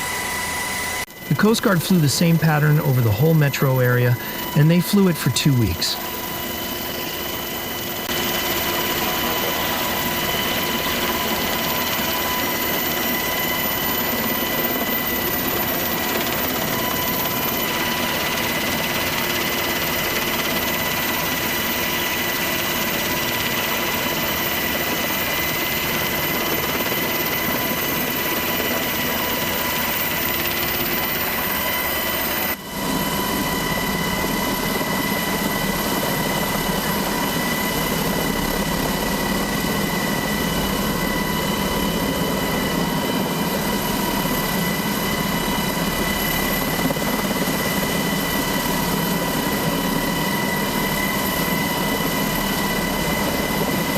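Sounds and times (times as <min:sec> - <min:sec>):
steady high whine: 0:00.0 - 0:19.2
helicopter turbine and rotor: 0:00.0 - 0:53.9.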